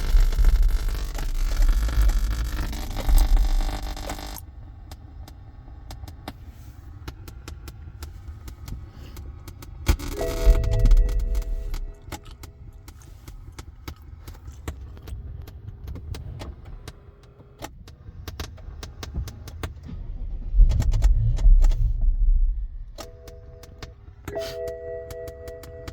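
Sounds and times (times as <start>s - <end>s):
low rumble: 0.0s - 4.3s, 10.2s - 12.9s, 19.6s - 24.2s
steady tones: 0.0s - 4.4s, 10.0s - 13.0s, 19.8s - 25.9s.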